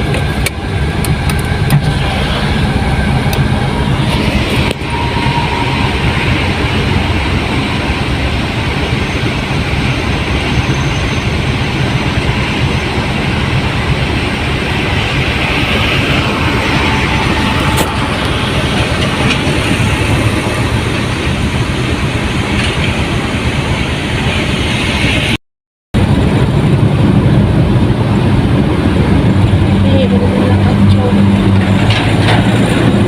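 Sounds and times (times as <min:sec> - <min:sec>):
excavator diesel engine running: 0:00.0 - 0:25.4, 0:26.0 - 0:33.0.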